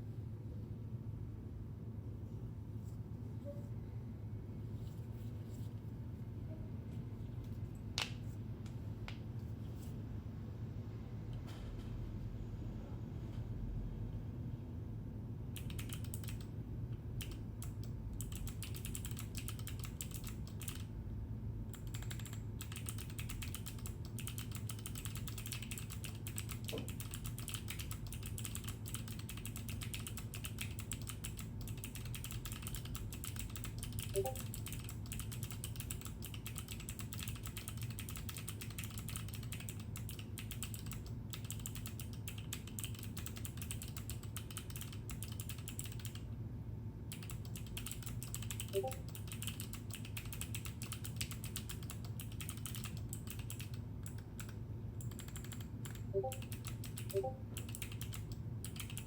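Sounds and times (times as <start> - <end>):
mechanical keyboard typing: 15.6 - 16.5, 17.2 - 20.9, 21.7 - 46.3, 47.1 - 59.0.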